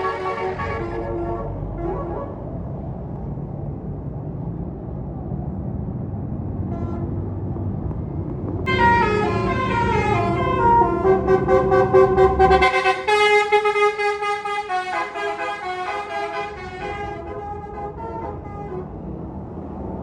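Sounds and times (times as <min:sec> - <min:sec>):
musical bus horn playing a tune: 0:00.0 - 0:02.4, 0:06.7 - 0:07.1, 0:08.7 - 0:19.0
bus engine running: 0:00.0 - 0:20.0.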